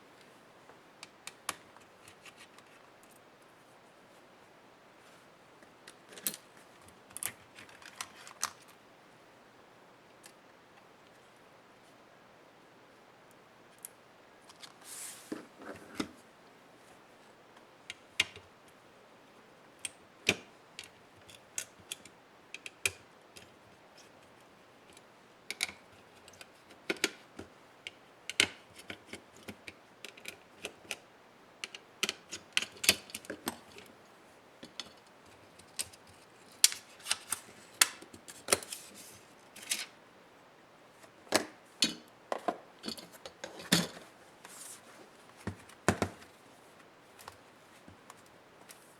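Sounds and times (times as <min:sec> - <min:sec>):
clicks of laptop parts and tools: 0:19.8 - 0:23.5, 0:24.9 - 0:31.0, 0:31.6 - 0:33.9, 0:34.6 - 0:38.9, 0:45.4 - 0:46.3.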